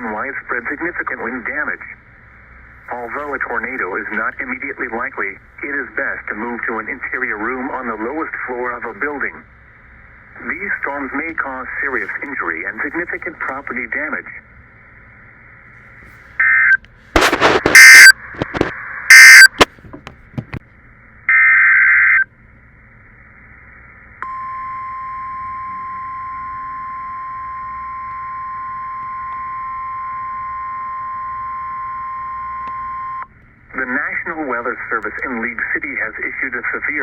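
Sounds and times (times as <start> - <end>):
faint radio hiss: 0.0 - 20.0, 33.5 - 37.0
screeching digital data bursts: 17.2 - 19.6
steady warning alarm tone: 17.6 - 19.7, 24.2 - 33.3.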